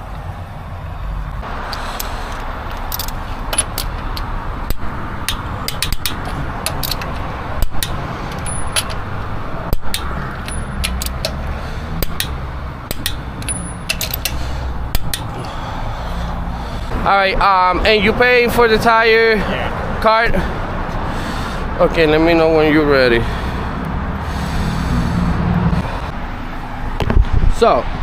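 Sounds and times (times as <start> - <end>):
steady low rumble: 0.0 - 18.5, 22.9 - 28.0.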